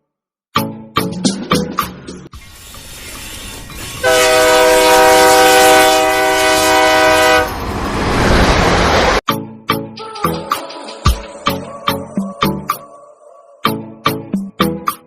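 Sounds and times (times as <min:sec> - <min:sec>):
rumbling train: 0:02.4 - 0:09.2
train horn: 0:04.0 - 0:07.6.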